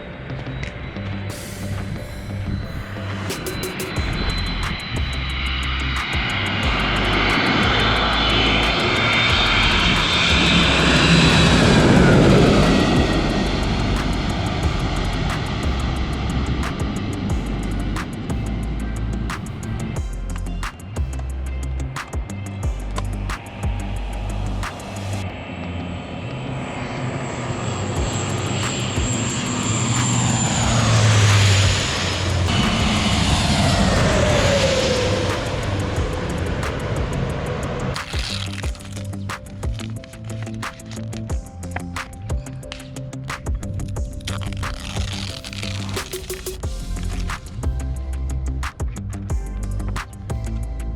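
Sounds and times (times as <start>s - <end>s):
jet airliner roaring overhead: 0.0s - 22.7s, 23.3s - 41.0s.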